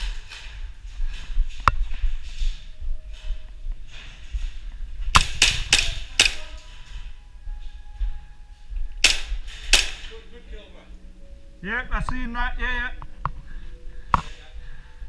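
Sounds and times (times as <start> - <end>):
airsoft gun shots: 5.1 - 6.4, 9.0 - 10.1.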